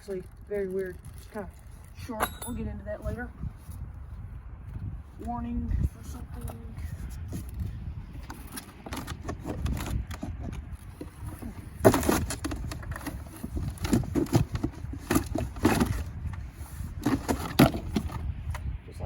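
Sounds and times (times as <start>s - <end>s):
box rustling and scraping: 8.2s - 18.4s.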